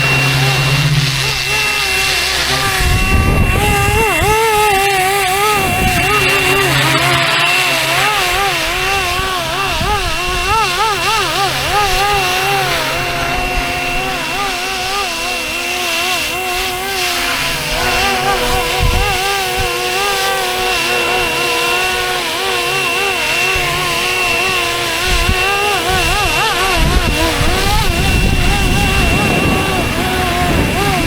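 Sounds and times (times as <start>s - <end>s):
model helicopter motor whining: 0.0s - 31.0s
wind buffeting microphone: 2.6s - 15.2s, 17.4s - 20.0s, 23.5s - 31.0s.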